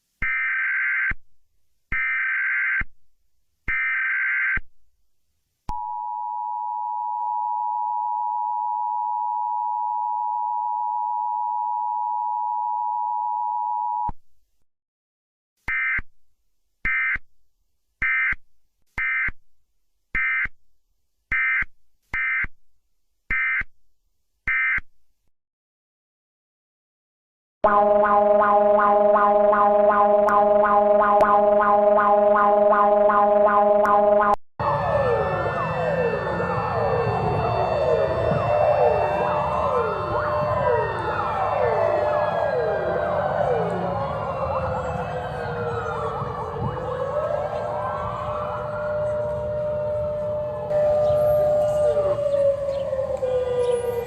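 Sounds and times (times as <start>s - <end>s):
two-tone attention signal: 27.7s - 40.0s.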